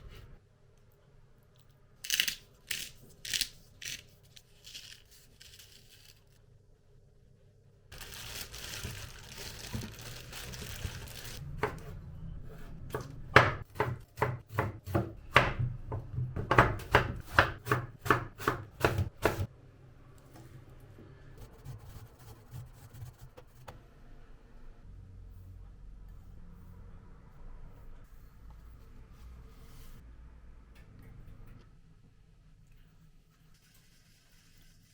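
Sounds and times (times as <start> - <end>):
knife chopping on cutting board: 12.9 - 19.5.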